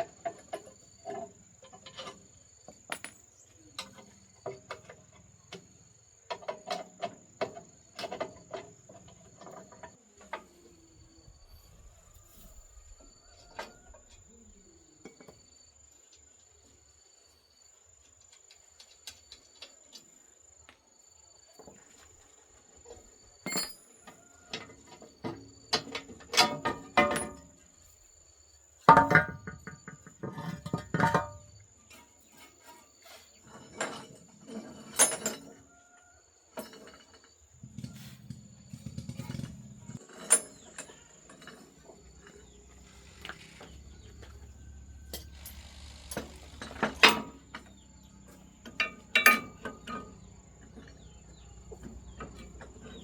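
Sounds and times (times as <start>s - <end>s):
tools clinking on metal parts: 2.9s - 4.0s, 23.4s - 24.7s, 25.7s - 27.6s, 28.9s - 35.6s, 39.4s - 53.0s
high insect trill: 10.5s - 53.0s.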